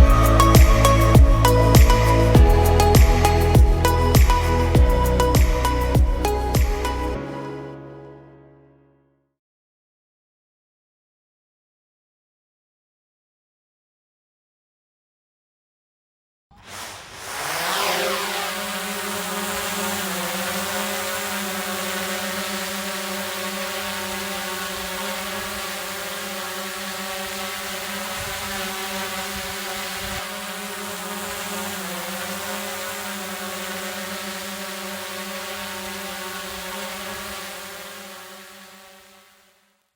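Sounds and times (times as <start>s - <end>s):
small motor buzzing: 0.0s - 7.2s, 16.5s - 39.9s.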